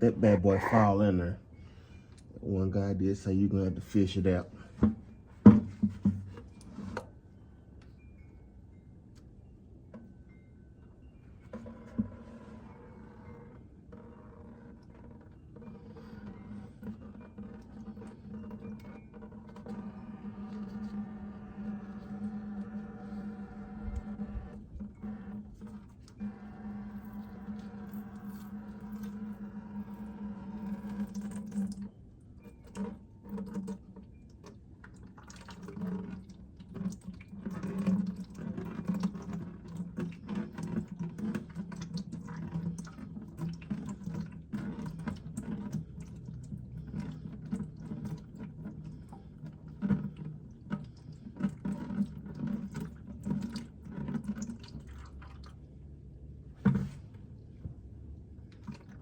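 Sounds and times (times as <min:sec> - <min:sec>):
held pitched tone: 0:00.0 - 0:01.3
oil pouring into drain pan: 0:24.8 - 0:31.9, 0:34.8 - 0:55.6.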